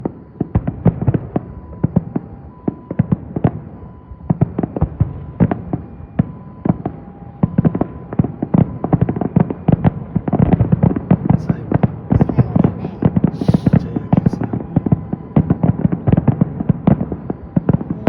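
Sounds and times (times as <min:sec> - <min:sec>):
fireworks bursting: 0:07.7 - 0:18.0
continuous rumble: 0:10.9 - 0:18.0.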